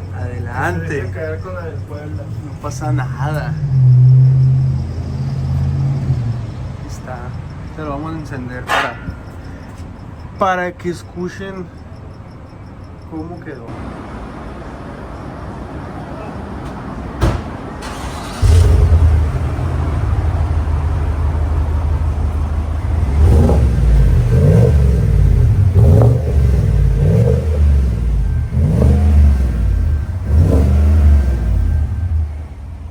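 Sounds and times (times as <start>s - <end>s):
car engine starting: 0.0s - 9.7s, 17.3s - 32.9s
car engine idling and revving: 0.0s - 10.2s, 17.6s - 32.9s.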